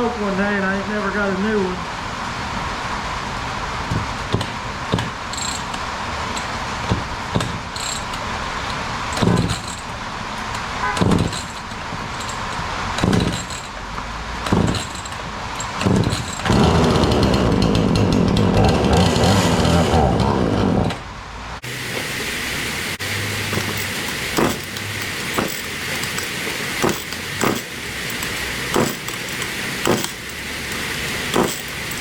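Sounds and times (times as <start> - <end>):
chainsaw pull cord yanked: 4.1 - 21.0, 23.4 - 32.0
loud steady humming: 15.9 - 21.0, 21.6 - 32.0
steady rain: 21.4 - 32.0.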